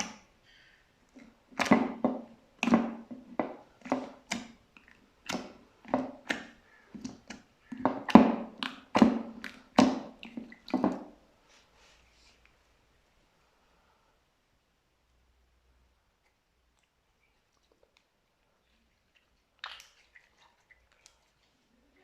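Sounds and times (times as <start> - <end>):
slime squishing by hand: 1.1 - 11.2.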